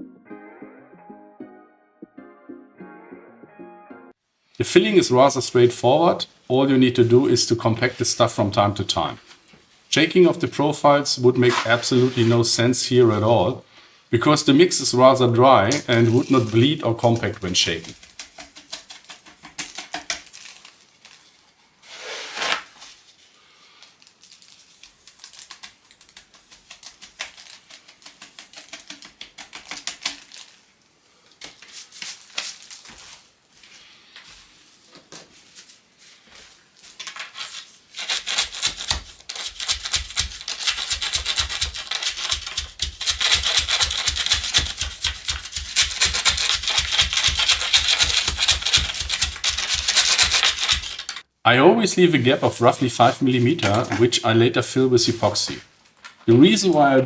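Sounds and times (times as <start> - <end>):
sand mix scraping: 10.0 - 13.6, 14.4 - 18.0, 21.8 - 22.8, 51.9 - 55.6.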